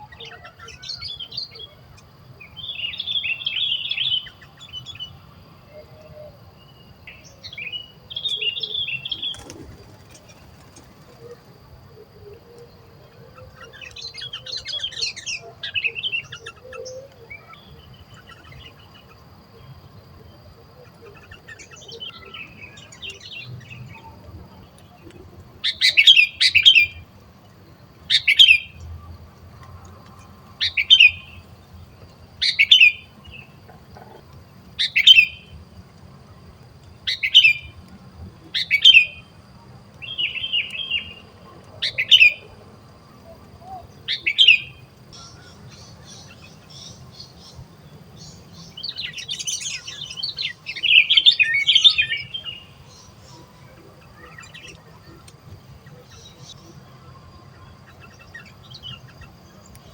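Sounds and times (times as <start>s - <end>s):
bird calling: 40.0s - 59.9s.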